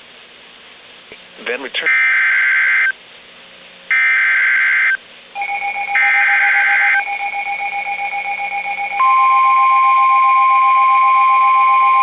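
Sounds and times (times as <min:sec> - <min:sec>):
buzzing data bursts: 0:01.8 - 0:02.9.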